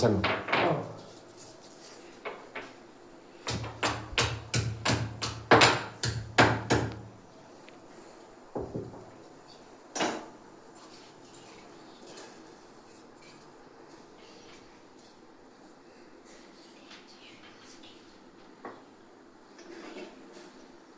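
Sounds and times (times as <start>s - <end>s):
knife knocks on kitchen surface: 8.6s - 9.1s.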